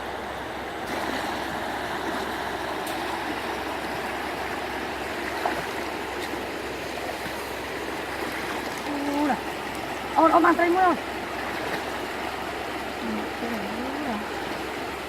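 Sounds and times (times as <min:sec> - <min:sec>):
water rushing and trickling: 0:00.0 - 0:15.0.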